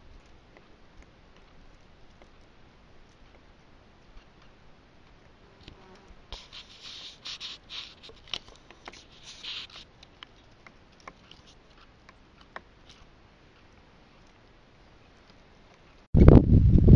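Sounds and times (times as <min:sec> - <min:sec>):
scratchy rustles: 0:05.8 - 0:12.0.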